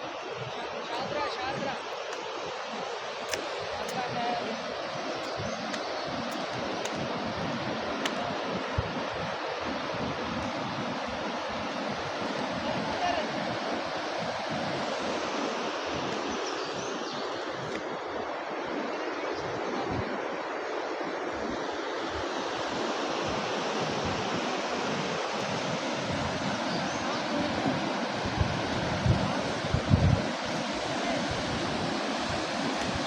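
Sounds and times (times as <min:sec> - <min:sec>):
rushing wind: 0:00.0 - 0:33.0
wind gusts buffeting microphone: 0:00.2 - 0:20.2, 0:22.1 - 0:33.0.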